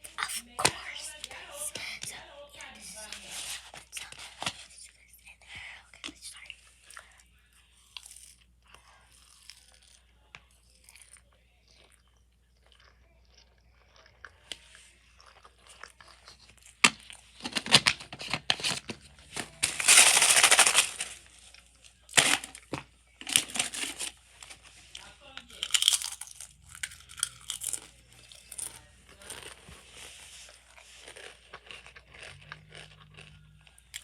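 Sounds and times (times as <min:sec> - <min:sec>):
snack packaging crinkling: 0:08.0 - 0:11.2, 0:12.6 - 0:34.0.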